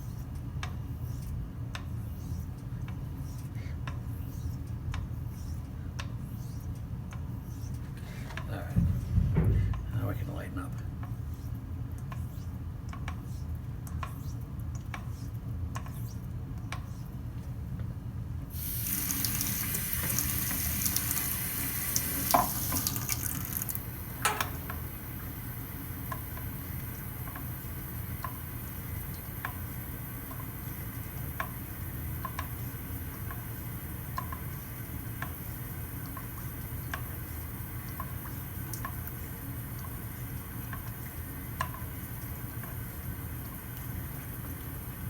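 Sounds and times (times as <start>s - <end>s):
sharp knocks: 8.7s - 10.0s
water running: 18.5s - 45.0s.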